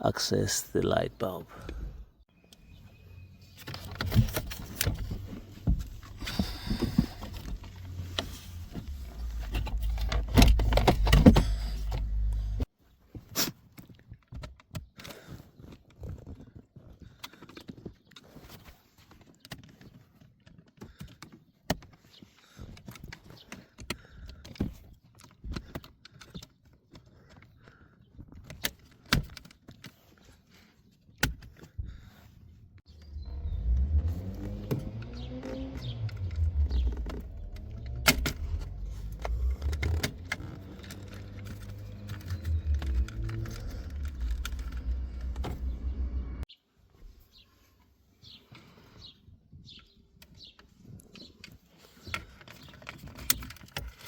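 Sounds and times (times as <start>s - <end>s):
low rumble: 32.9s - 46.4s.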